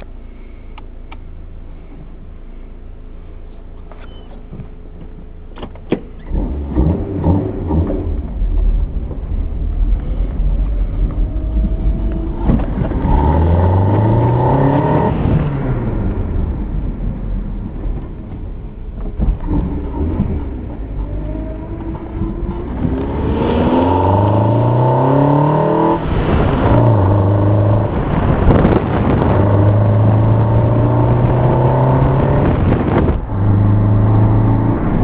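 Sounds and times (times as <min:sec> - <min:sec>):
car engine revving: 0:06.1 - 0:35.0.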